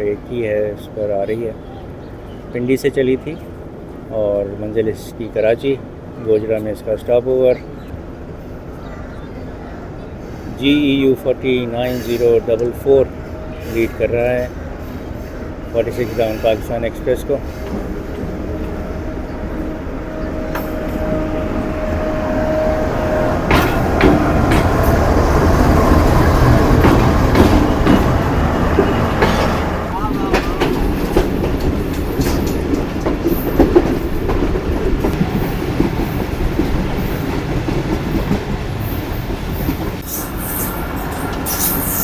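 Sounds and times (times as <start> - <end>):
train rumbling on rails: 0.0 - 42.0
wheels clicking over rail joints: 23.4 - 40.0.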